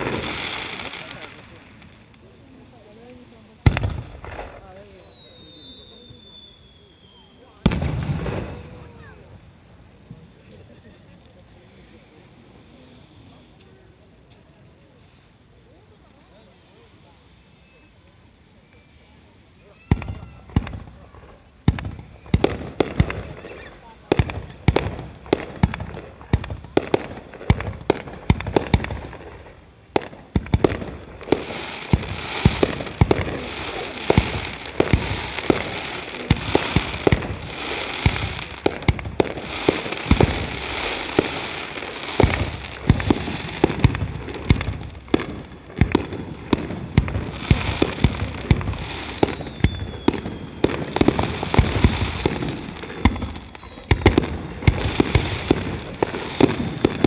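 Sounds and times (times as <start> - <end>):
crackling hiss: 0.0 - 57.0
firework shells bursting: 19.9 - 57.0.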